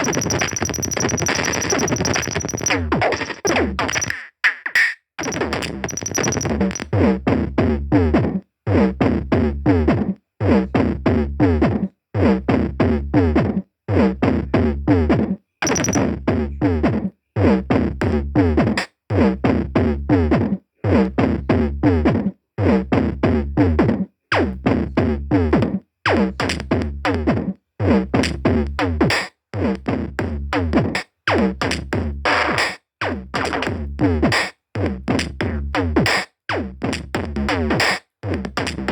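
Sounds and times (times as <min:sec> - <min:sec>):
electronic music with drum-machine beat: 0:00.0 - 0:04.2, 0:05.2 - 0:06.9, 0:15.6 - 0:16.1, 0:31.6 - 0:34.5.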